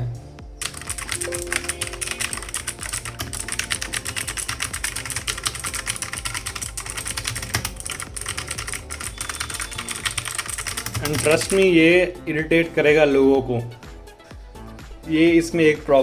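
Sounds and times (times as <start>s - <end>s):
mechanical keyboard typing: 0.6s - 11.7s.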